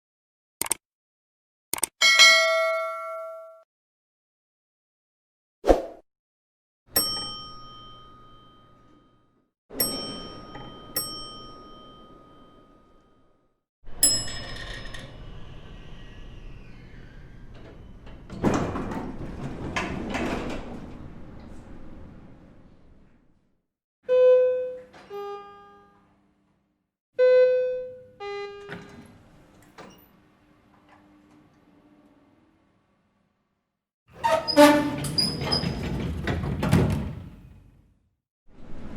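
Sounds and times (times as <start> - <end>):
elevator arrival chime: 6.9 - 13.4, 14.0 - 18.3, 24.1 - 26.0, 27.2 - 30.1
elevator door and car rumbling: 7.0 - 13.3, 13.9 - 23.4, 27.6 - 31.8, 34.2 - 37.9.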